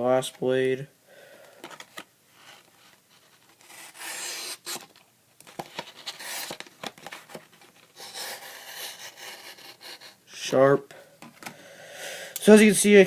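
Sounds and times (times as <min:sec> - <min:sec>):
knife blade slicing paper: 0:03.6 - 0:04.8.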